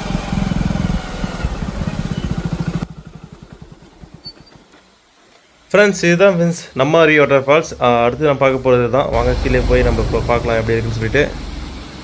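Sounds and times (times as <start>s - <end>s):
motorcycle engine running: 0.0s - 4.7s, 9.1s - 12.0s
wind and road noise: 8.6s - 12.0s.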